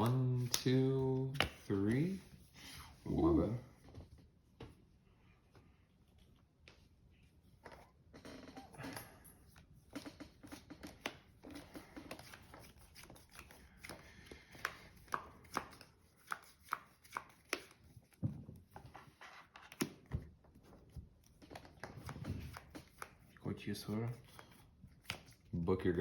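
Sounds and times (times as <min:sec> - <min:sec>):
cards clicking and snapping: 0:00.0 - 0:02.0, 0:10.5 - 0:17.8, 0:21.4 - 0:23.3, 0:24.2 - 0:25.5.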